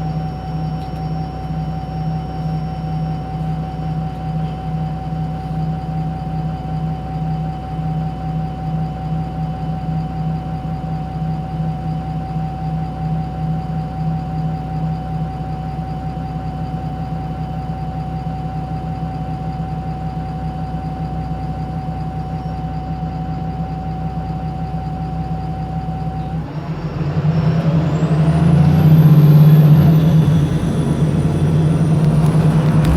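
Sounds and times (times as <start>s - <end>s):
bus diesel engine: 0.0s - 32.9s
high whine climbing: 26.5s - 32.9s.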